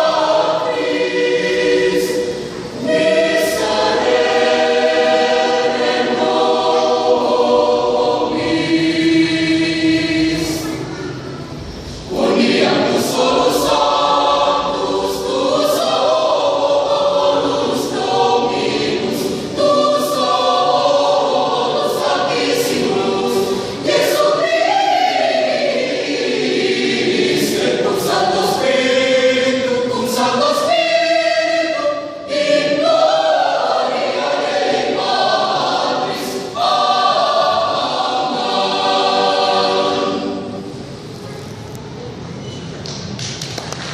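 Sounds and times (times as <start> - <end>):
youth choir singing: 0.0 - 41.1.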